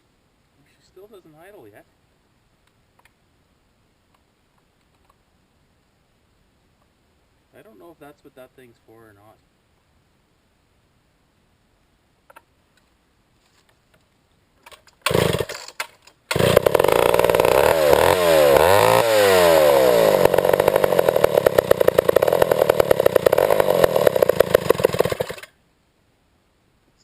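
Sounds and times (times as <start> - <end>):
chainsaw starting and revving: 15.0 - 25.6.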